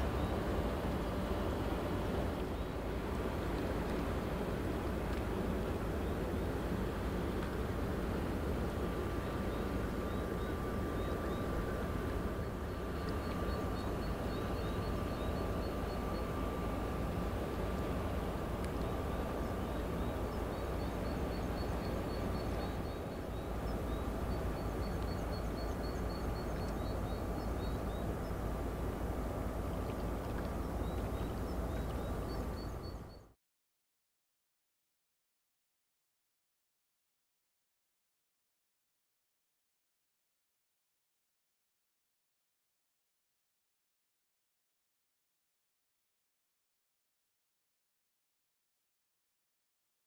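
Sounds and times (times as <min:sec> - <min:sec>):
diesel engine low rumble: 0:00.0 - 0:33.4.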